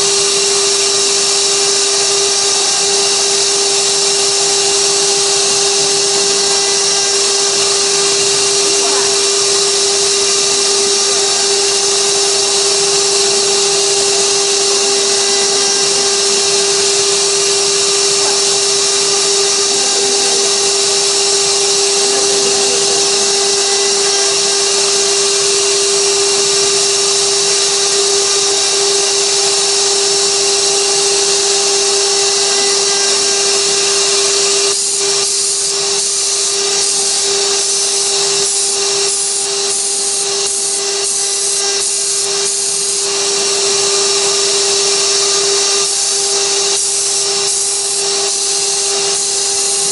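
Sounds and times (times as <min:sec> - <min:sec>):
bit cutting wood hiss: 0:00.0 - 0:49.9
router spindle whining: 0:00.0 - 0:49.9.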